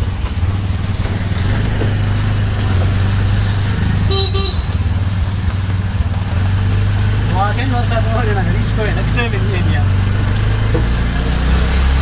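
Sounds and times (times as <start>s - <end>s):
vehicle engine droning: 0.0s - 12.0s
vehicle horn tooting: 4.1s - 4.8s.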